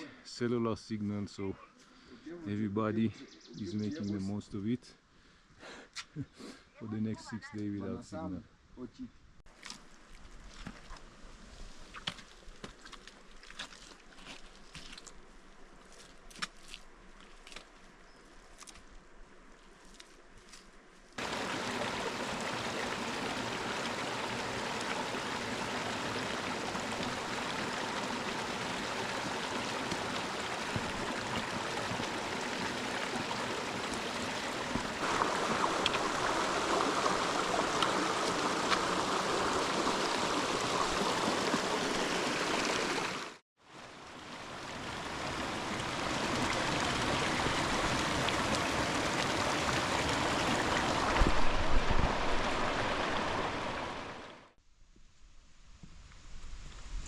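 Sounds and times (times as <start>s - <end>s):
rushing stream water: 21.2s - 54.6s.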